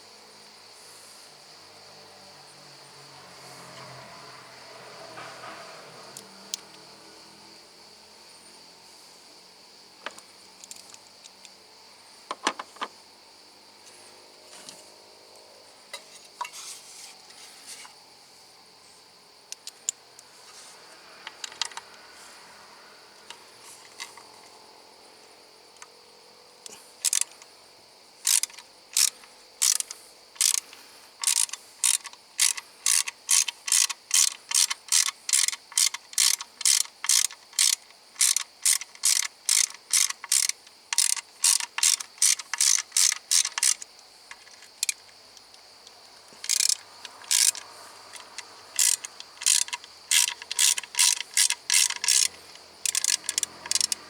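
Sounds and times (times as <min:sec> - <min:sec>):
ratchet wrench clicking: 0:27.0 - 0:27.4, 0:28.2 - 0:45.1, 0:46.4 - 0:54.0.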